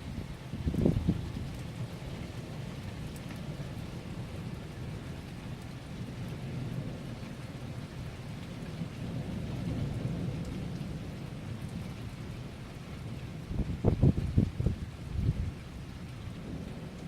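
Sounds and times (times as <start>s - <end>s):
low rumble of thunder: 0.0s - 17.0s
steady rain: 0.0s - 17.0s.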